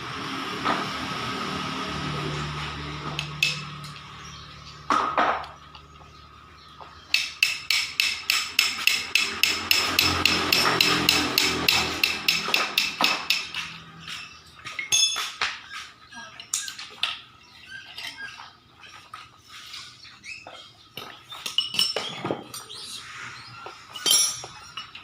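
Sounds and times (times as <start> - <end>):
hammer striking metal: 3.2 - 4.2, 7.1 - 14.2
metal parts clinking: 23.9 - 25.0.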